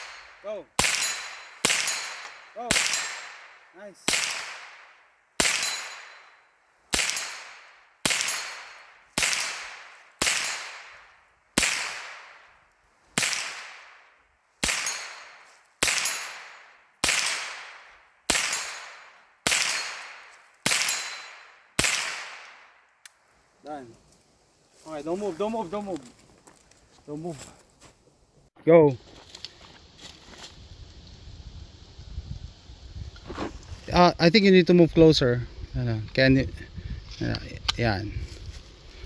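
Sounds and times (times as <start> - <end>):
rifle shots with echo: 0.0 - 12.6, 13.2 - 22.9.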